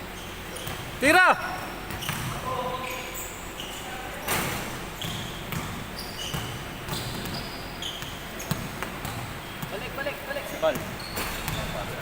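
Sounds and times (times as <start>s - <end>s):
sneakers squeaking: 0.0s - 12.0s
basketball bouncing on court: 0.5s - 2.7s, 4.3s - 12.0s.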